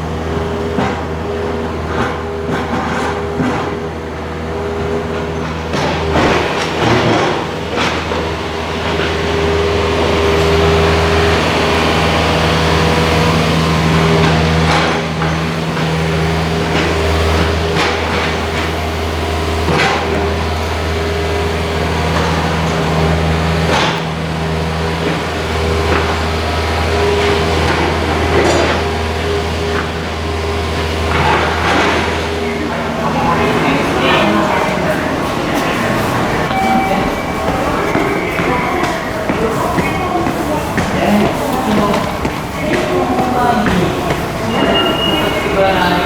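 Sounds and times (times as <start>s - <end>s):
low machine hum: 0.0s - 46.0s
held tones: 31.7s - 40.4s.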